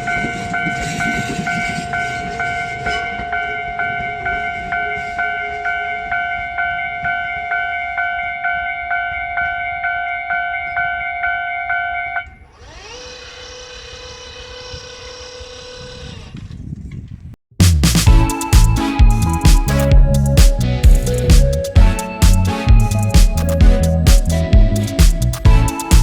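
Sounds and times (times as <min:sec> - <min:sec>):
level-crossing warning bell: 0:00.0 - 0:12.4, 0:18.1 - 0:26.0
rising whine: 0:18.0 - 0:26.0.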